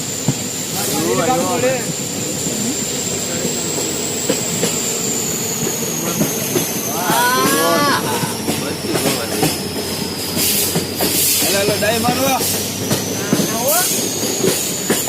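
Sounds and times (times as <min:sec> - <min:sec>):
train wheels rumbling and rattling: 0:00.0 - 0:15.0
person calling out: 0:07.0 - 0:08.4.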